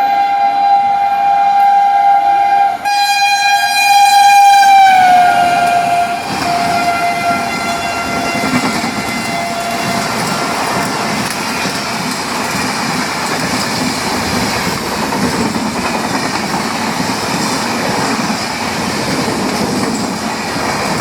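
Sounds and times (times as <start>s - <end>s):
locomotive horn blast: 0.0s - 11.1s
train coaches rumbling on track: 0.0s - 21.0s.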